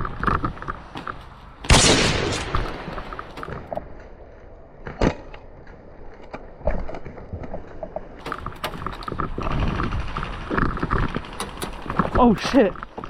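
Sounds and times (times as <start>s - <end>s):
airsoft rifle shots: 1.6s - 3.8s
loud rustling: 8.2s - 13.0s.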